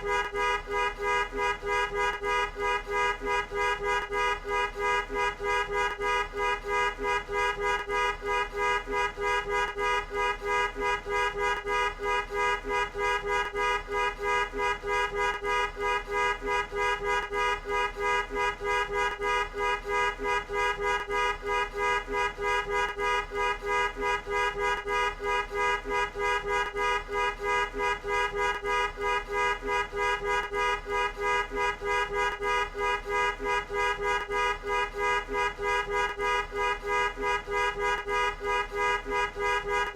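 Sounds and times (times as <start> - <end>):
car horn short beeps: 0.0 - 7.9.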